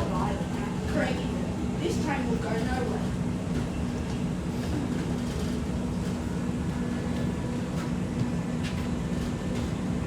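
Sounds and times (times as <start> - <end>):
train carriage hum and rumble: 0.0 - 10.0.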